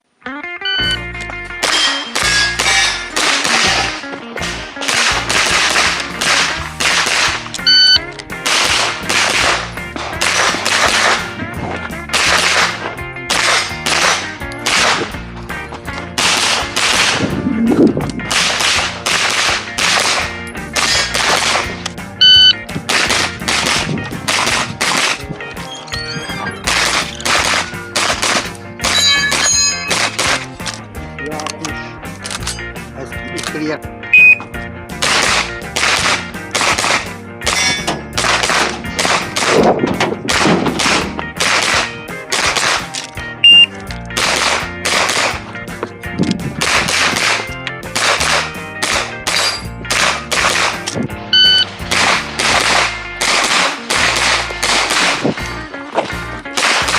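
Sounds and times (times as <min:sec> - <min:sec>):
background music: 0:00.1 - 0:56.9
gunshots: 0:01.6 - 0:11.4, 0:12.1 - 0:15.2, 0:16.2 - 0:21.8, 0:22.8 - 0:25.3, 0:26.6 - 0:30.6, 0:35.0 - 0:43.1, 0:44.2 - 0:45.5, 0:46.6 - 0:55.6, 0:56.5 - 0:56.9.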